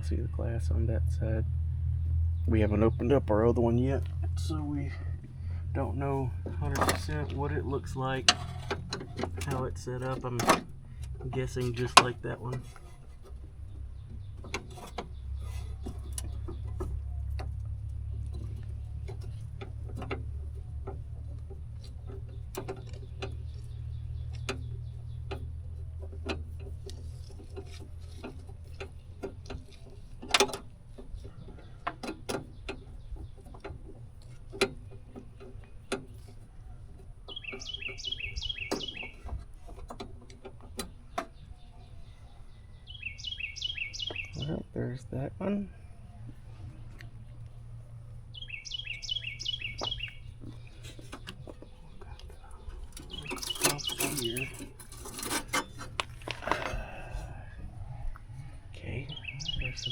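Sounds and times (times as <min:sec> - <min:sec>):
bird chirping: 0:11.2 - 0:30.2, 0:30.8 - 0:59.9
hand tools clicking and knocking: 0:49.8 - 0:57.0
low rumble: 0:55.7 - 0:59.9.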